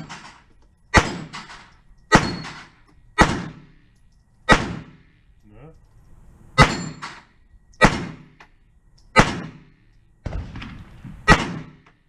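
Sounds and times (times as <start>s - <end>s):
gunshots: 0.0s - 3.8s, 4.5s - 5.1s, 6.6s - 8.4s, 9.1s - 12.0s.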